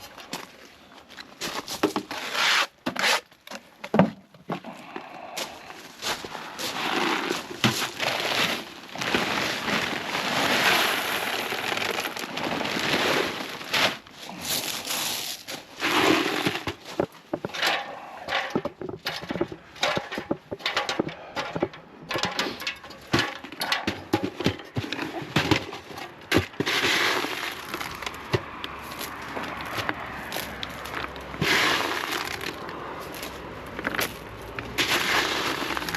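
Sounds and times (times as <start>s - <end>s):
gritty scraping of render: 0.0s - 3.8s, 4.5s - 35.9s
sharp clicks and crackles of stones: 6.6s - 24.0s, 25.8s - 35.9s.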